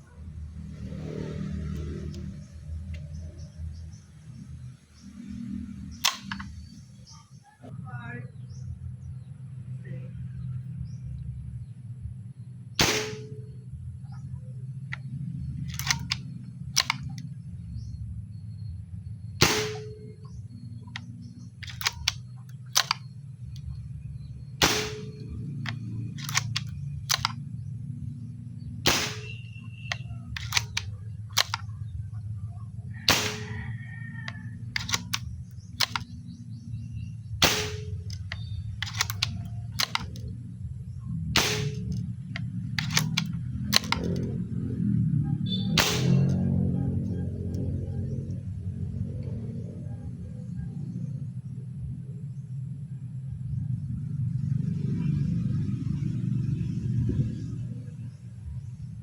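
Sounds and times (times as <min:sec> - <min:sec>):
steady low hum: 0:00.0 - 0:59.0
airgun firing sharp crack: 0:06.0 - 0:06.8, 0:12.8 - 0:13.5, 0:15.6 - 0:17.2, 0:19.4 - 0:20.1, 0:20.9 - 0:22.2, 0:22.8 - 0:23.1, 0:24.6 - 0:27.4, 0:28.8 - 0:31.7, 0:33.1 - 0:33.6, 0:34.3 - 0:36.2, 0:37.4 - 0:40.3, 0:41.3 - 0:44.4, 0:45.7 - 0:46.6.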